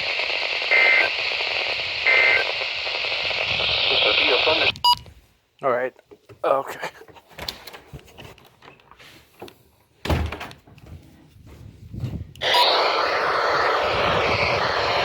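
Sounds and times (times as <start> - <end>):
radio static hiss: 0.0 - 4.9, 12.4 - 15.0.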